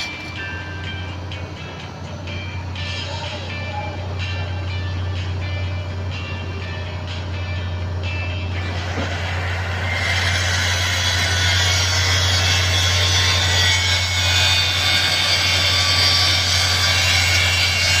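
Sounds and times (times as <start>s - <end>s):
low engine hum: 0.0s - 10.6s.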